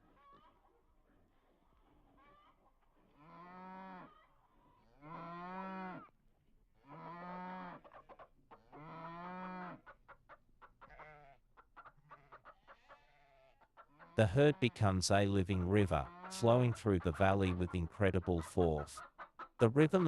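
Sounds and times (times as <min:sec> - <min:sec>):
wildebeest lowing: 0:14.1 - 0:20.0.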